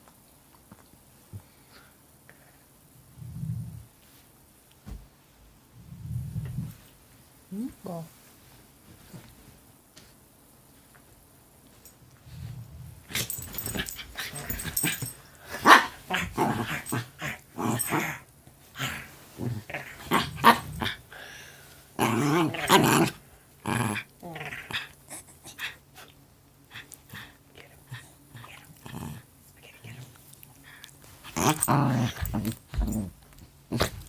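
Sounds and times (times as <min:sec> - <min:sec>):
dogs play-growling: 0:05.8 - 0:06.9, 0:11.8 - 0:21.2, 0:22.0 - 0:34.0.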